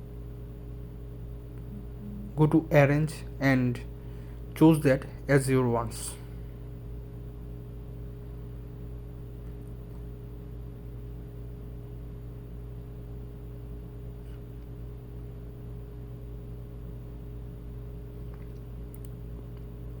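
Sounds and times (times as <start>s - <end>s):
low electrical hum: 0.0s - 20.0s
room noise: 1.6s - 3.9s.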